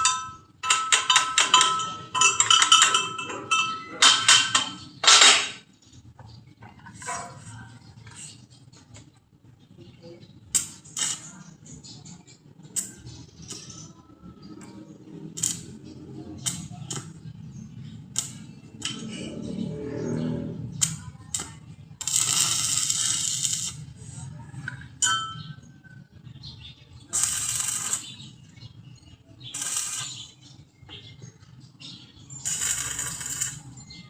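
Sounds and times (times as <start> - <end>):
metal parts clinking and knocking: 0.0 - 5.6.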